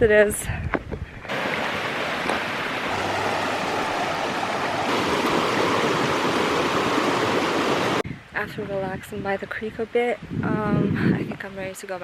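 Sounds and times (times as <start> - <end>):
creek flowing: 1.3 - 8.0.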